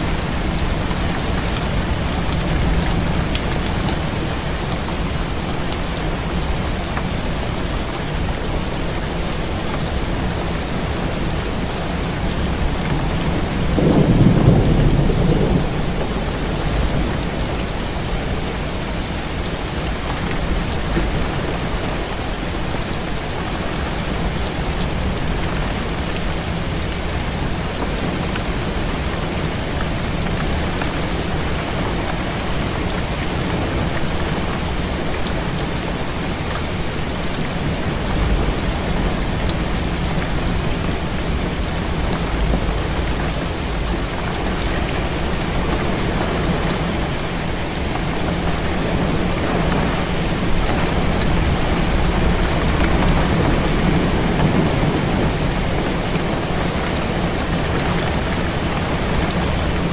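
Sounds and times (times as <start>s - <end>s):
heavy rain on window: 0.0s - 59.9s
thunder rumbling: 12.0s - 19.6s, 29.8s - 59.9s.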